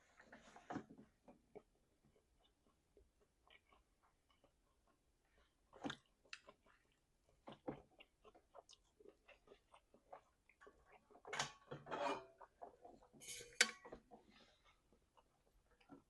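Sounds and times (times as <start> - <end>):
wet chewing and lip-smacking: 1.4 - 11.3.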